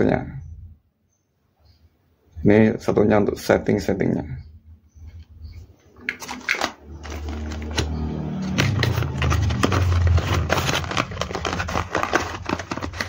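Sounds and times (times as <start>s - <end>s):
loud rustling and rubbing: 6.2s - 13.0s.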